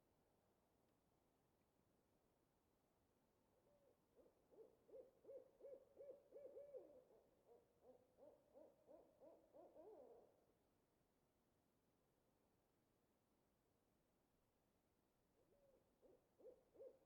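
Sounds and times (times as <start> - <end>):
distant owl hooting: 4.2 - 10.3.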